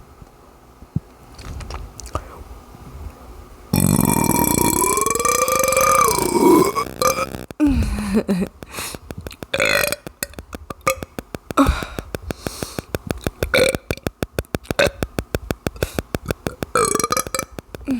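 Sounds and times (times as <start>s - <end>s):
person burping: 3.8s - 12.1s, 16.8s - 17.9s.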